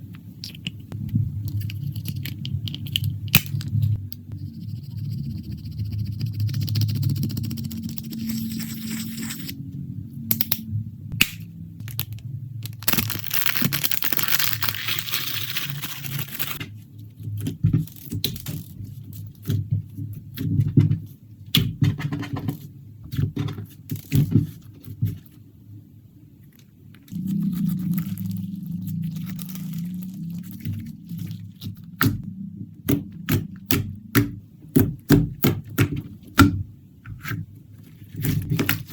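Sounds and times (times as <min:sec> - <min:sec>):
slime squishing and popping: 0:11.2 - 0:16.6.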